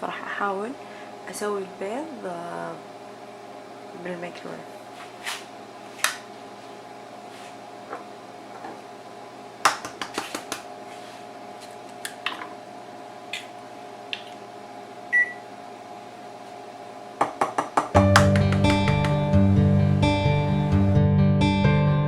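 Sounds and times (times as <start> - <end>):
microwave oven humming: 0.0 - 21.9
sharp clicks and taps: 17.2 - 19.4.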